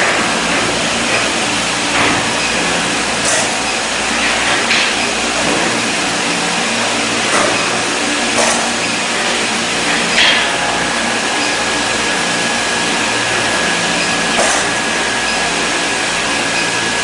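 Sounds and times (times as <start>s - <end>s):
steady machine noise: 0.0s - 17.0s.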